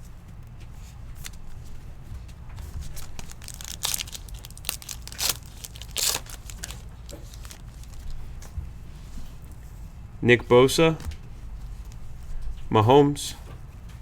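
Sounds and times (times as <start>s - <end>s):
foil wrapper crinkling and tearing: 2.6s - 8.3s.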